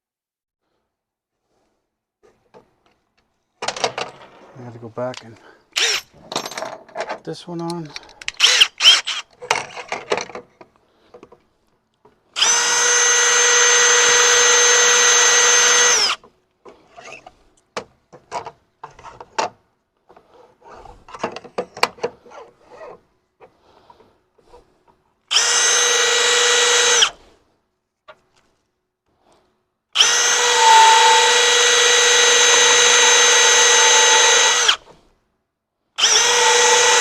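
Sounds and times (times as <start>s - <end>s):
clicks and knocks: 2.5s - 5.4s
cordless drill whining: 5.8s - 6.1s, 8.0s - 9.4s, 12.4s - 16.3s, 25.3s - 27.2s, 30.0s - 35.0s, 36.0s - 37.0s.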